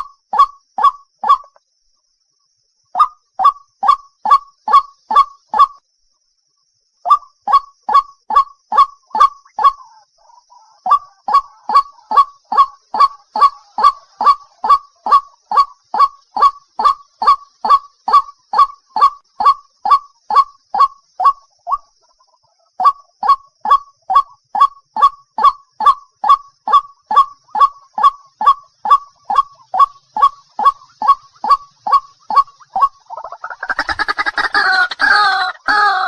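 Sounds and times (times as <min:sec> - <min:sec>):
waterhen honking calls: 0:10.9 - 0:21.8, 0:22.8 - 0:36.0.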